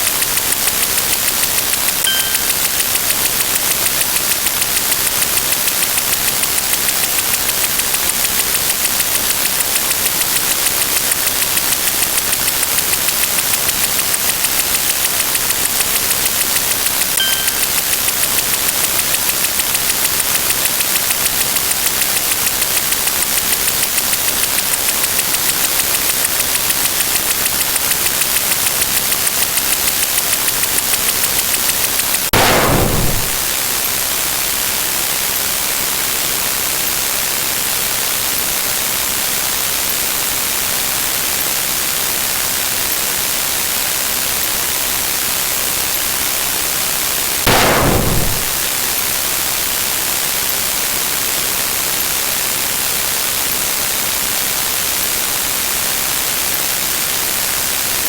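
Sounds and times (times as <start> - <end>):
faint beep: 0.0 - 7.7, 8.6 - 23.2, 32.4 - 33.5, 47.5 - 49.1.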